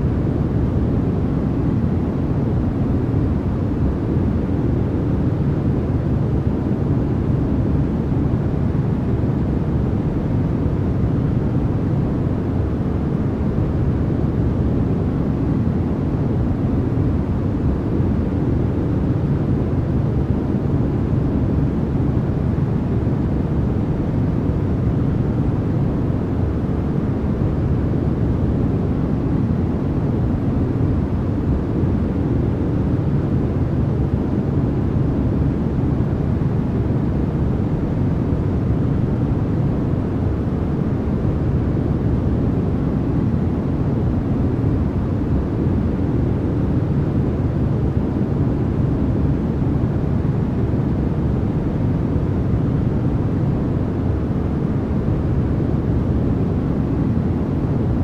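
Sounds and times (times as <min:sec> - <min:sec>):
white noise rush: 0:00.0 - 0:58.0.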